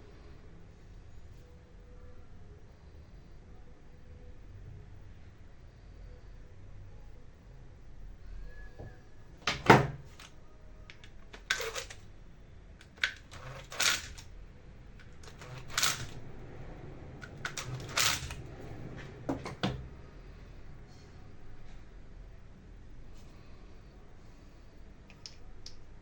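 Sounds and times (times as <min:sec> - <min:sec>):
metal parts and tools clinking: 0:10.9 - 0:12.0, 0:12.8 - 0:14.3, 0:15.0 - 0:16.2, 0:17.2 - 0:18.4.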